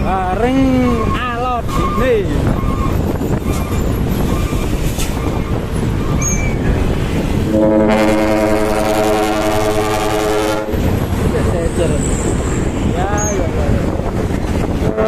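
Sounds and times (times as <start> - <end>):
traffic and engine noise: 0.0 - 15.0
trumpet air horn blast: 7.5 - 10.8.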